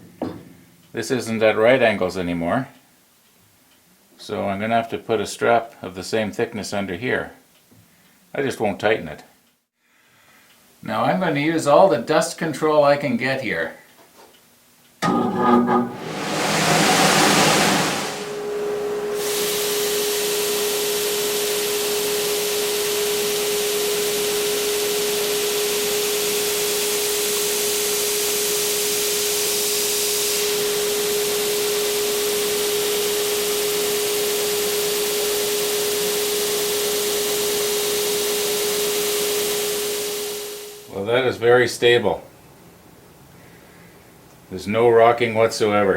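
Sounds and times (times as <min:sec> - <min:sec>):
edge sander running: 0:15.0 - 0:27.2, 0:30.4 - 0:40.9.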